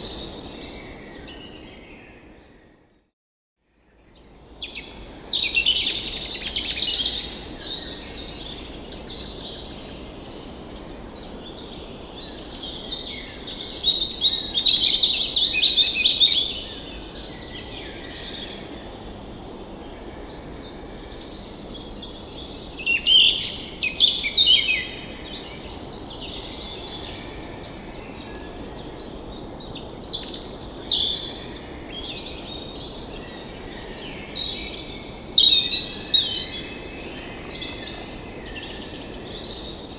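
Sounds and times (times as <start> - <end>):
songbirds singing and chirping: 4.1 - 39.9.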